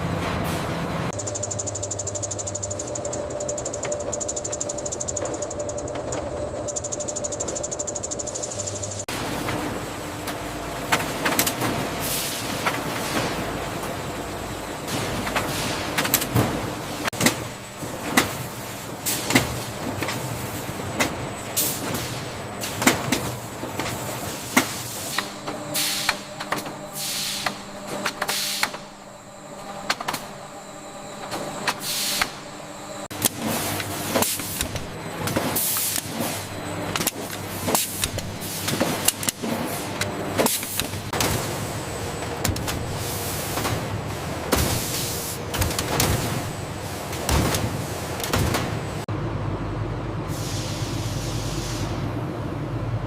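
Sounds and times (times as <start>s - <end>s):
machinery clanks and clicks: 0.0s - 49.2s
machinery hum: 0.0s - 53.0s.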